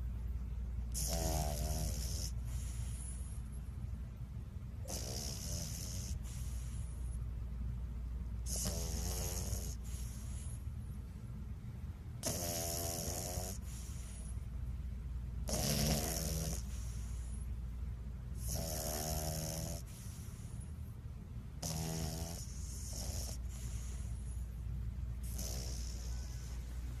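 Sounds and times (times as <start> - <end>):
steady low hum: 0.0 - 27.0
dog snoring: 0.9 - 3.6, 4.8 - 7.2, 8.4 - 10.7, 12.2 - 14.4, 15.4 - 17.5, 18.3 - 20.7, 21.6 - 24.5, 25.2 - 27.0.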